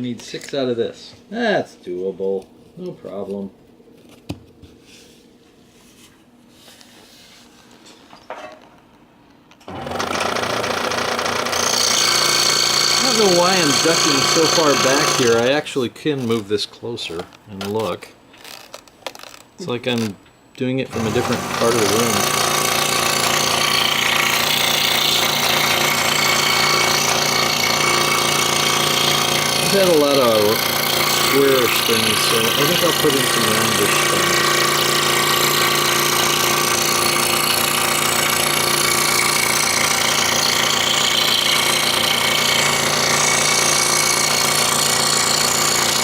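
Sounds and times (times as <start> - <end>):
scroll saw buzzing: 9.7 - 15.6, 20.9 - 46.0.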